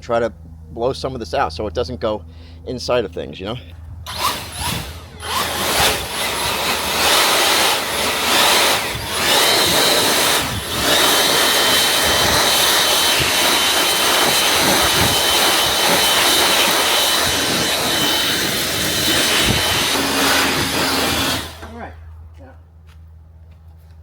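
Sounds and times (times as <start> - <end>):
high whine: 2.8 - 22.2
leaf blower rush of air: 4.0 - 22.0.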